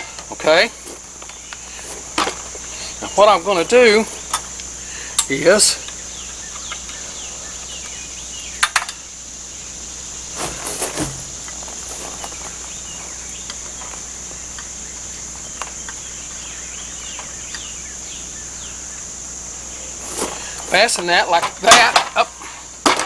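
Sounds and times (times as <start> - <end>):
insects chirping: 0.0 - 23.0
knocks of parts being handled: 10.4 - 12.3.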